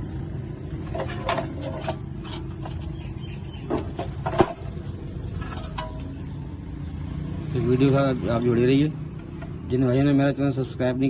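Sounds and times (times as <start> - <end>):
tools and metal parts clicking: 0.8 - 6.3.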